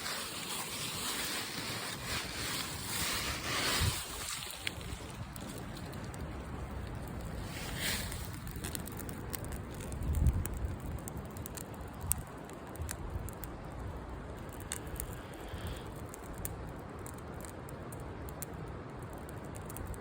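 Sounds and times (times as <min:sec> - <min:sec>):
campfire crackling and popping: 0:00.0 - 0:20.0
low fire rumble: 0:00.0 - 0:20.0.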